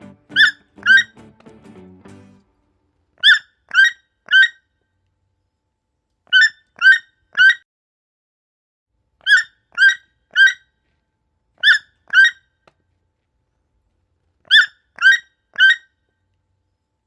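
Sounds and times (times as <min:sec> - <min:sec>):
toucan croaking calls: 0:00.0 - 0:01.3, 0:02.6 - 0:04.6, 0:06.3 - 0:07.6, 0:09.2 - 0:10.7, 0:11.6 - 0:12.4, 0:14.5 - 0:15.9.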